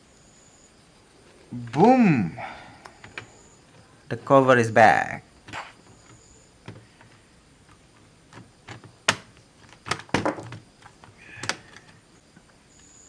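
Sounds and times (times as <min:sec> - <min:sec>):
plastic laptop case snapping: 0:08.3 - 0:11.9.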